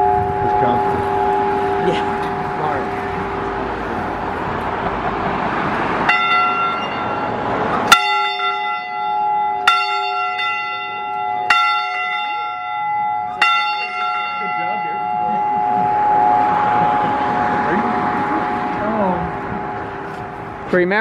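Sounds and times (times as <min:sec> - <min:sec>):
rushing noise: 0:00.0 - 0:08.0, 0:15.4 - 0:20.8
church bell tolling: 0:00.0 - 0:21.0.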